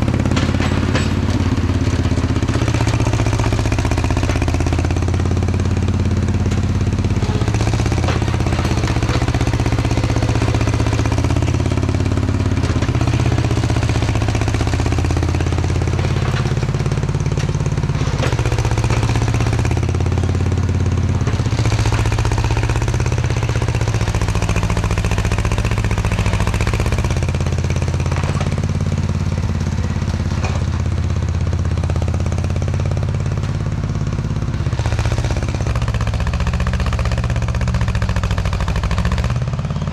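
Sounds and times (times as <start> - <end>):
machine clanks and knocks: 0.0 - 3.4, 6.3 - 20.4, 27.9 - 31.0
diesel engine of earthmoving machine: 0.0 - 39.9.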